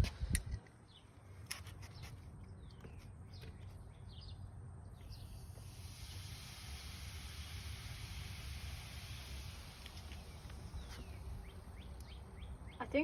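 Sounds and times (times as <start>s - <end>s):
bird chirps: 1.8s - 5.6s, 10.1s - 13.0s
soda fizzing hiss: 5.1s - 12.3s.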